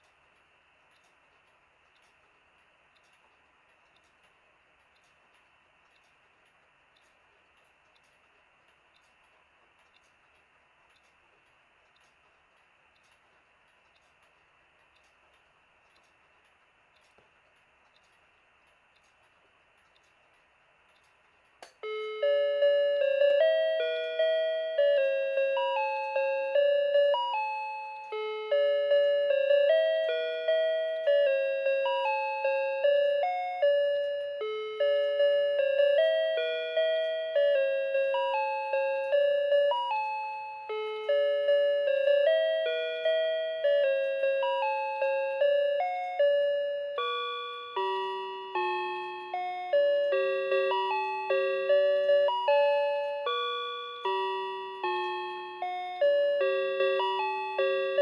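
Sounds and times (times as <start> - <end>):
melody alarm clock ringing: 21.8 - 58.0.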